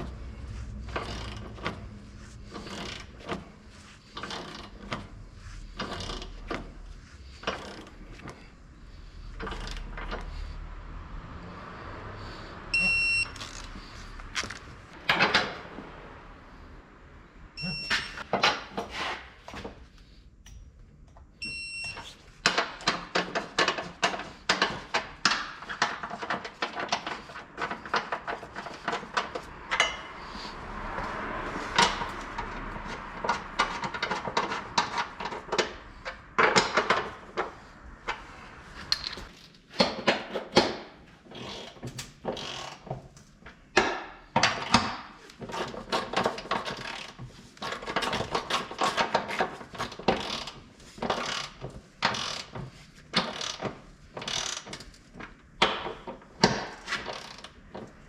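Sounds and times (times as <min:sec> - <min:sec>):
short electronic beep: 0:12.7 - 0:13.4, 0:17.6 - 0:18.2
metal tools clicking and knocking: 0:22.4 - 0:30.5, 0:31.7 - 0:38.2, 0:38.9 - 0:40.8.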